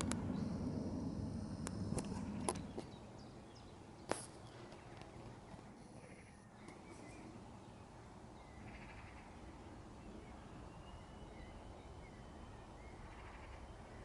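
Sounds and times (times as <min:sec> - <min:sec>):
low rumble: 0:00.0 - 0:03.5.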